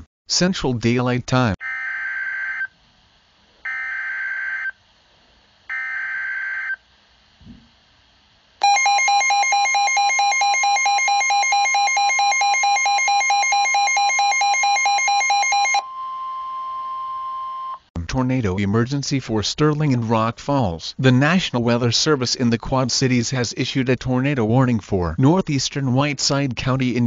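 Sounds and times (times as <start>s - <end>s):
loud steady attention tone: 8.6s - 19.4s.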